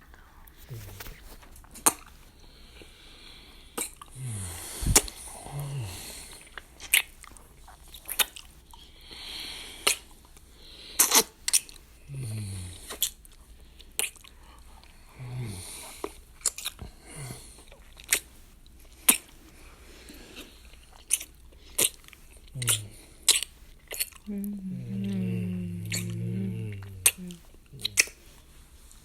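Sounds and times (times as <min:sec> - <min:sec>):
man breathing: 0:04.2 - 0:06.6, 0:24.3 - 0:28.6
wet lip smacks: 0:21.0 - 0:24.3, 0:25.9 - 0:26.2, 0:26.8 - 0:28.3
low falling hums: 0:24.3 - 0:28.2.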